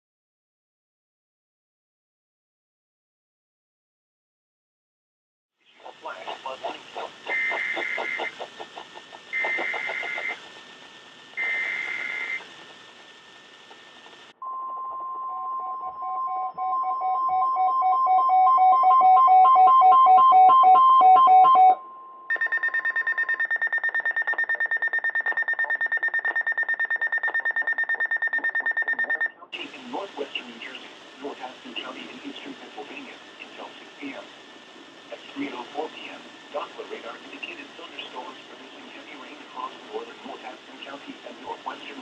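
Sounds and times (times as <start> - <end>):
data header screech: 7.2 - 8.5, 9.4 - 10.5, 11.4 - 12.5
fast-pulsing high alarm tone: 7.2 - 8.6, 9.3 - 10.6, 11.3 - 12.7, 14.8 - 29.4
pulsing beeps: 7.2 - 8.6, 9.3 - 10.5, 11.4 - 12.6, 14.4 - 29.5.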